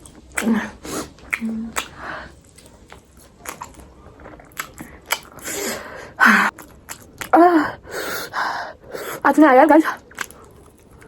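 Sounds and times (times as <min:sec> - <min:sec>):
person chewing food: 0:00.0 - 0:07.4, 0:10.0 - 0:11.0.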